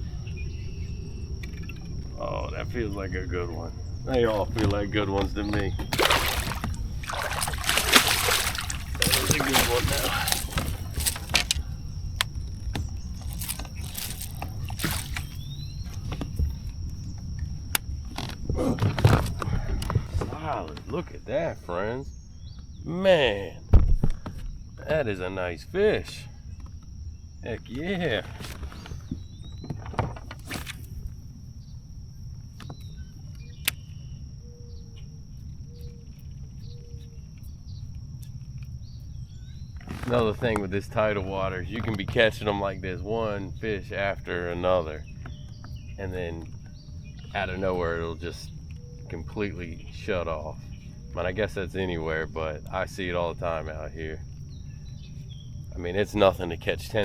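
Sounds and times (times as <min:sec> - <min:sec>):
wind and water rumble: 0:00.0 - 0:20.4
insect drone: 0:00.0 - 0:57.0
bird calls: 0:05.2 - 0:16.6
fish splashing in water: 0:05.9 - 0:15.6.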